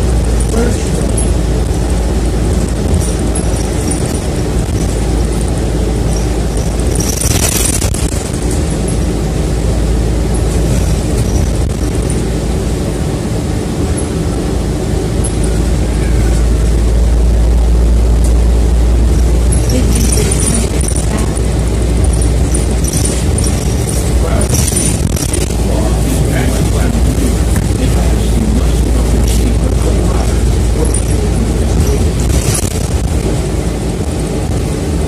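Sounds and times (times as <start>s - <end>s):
light rattles: 0.0s - 9.4s, 18.1s - 33.5s
bus engine and road rumble: 0.0s - 35.0s.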